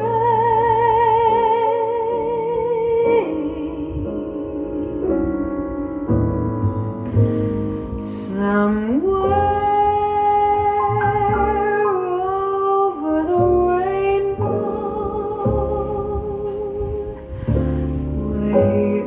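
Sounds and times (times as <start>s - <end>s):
instrumental accompaniment: 4.8s - 19.0s.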